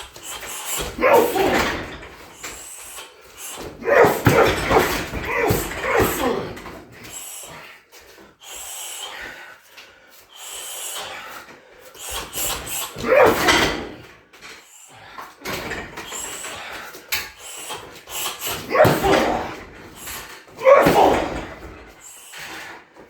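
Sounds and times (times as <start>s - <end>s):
kicks thudding on heavy bag: 3.6s - 6.8s, 18.5s - 21.9s.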